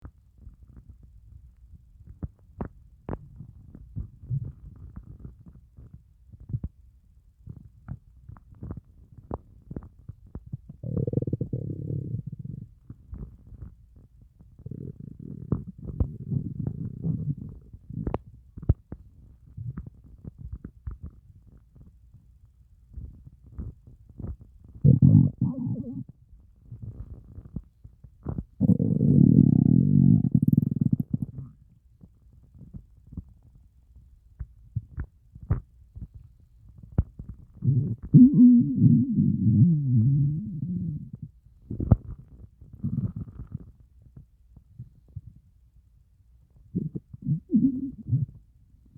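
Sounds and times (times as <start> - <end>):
stomach growling and gurgling: 2.0 - 6.8, 7.5 - 21.9, 22.9 - 33.3, 34.8 - 45.4, 46.6 - 48.4.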